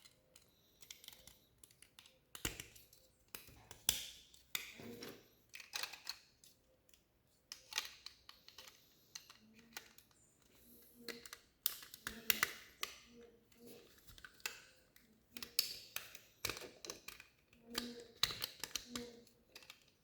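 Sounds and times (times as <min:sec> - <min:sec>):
plastic pieces clicking together: 0:00.0 - 0:04.8, 0:05.4 - 0:20.0
plastic pieces rattling: 0:05.5 - 0:06.2, 0:15.4 - 0:20.0.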